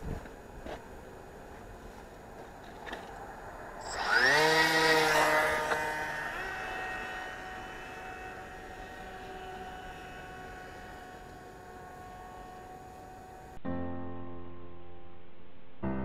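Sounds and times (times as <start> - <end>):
drone motors whining: 3.8 - 13.6.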